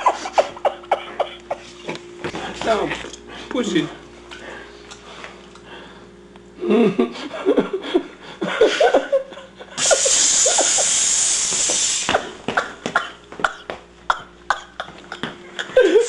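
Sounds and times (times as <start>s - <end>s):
people laughing: 0.0s - 2.6s, 6.6s - 11.1s, 14.5s - 16.0s
steam hissing: 9.8s - 12.3s.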